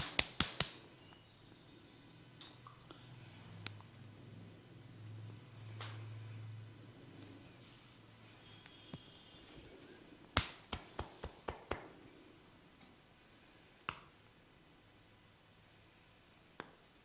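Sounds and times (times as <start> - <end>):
hands snapping cracks: 0.0 - 0.8, 10.3 - 11.9.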